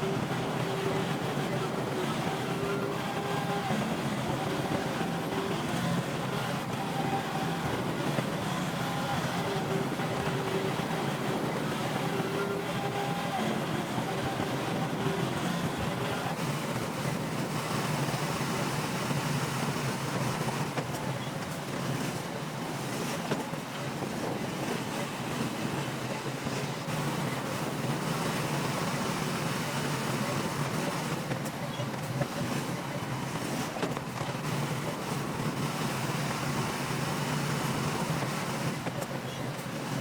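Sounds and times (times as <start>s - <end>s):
bulldozer diesel engine running: 0.0s - 40.0s.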